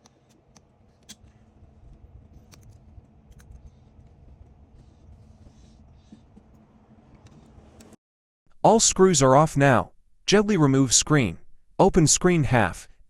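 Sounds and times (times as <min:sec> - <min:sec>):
low background rumble: 0:00.7 - 0:08.0
screwdriver clicks and ticks: 0:02.4 - 0:03.6.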